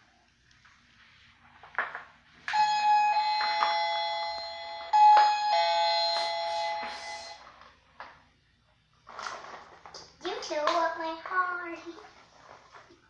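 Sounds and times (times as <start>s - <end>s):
electronic doorbell ding-dong chime: 2.5s - 7.4s.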